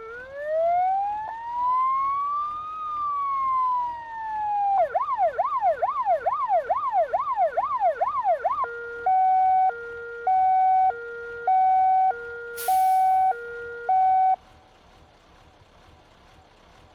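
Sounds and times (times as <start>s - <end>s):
fire engine siren: 0.0s - 14.4s
brief hiss: 12.6s - 13.4s.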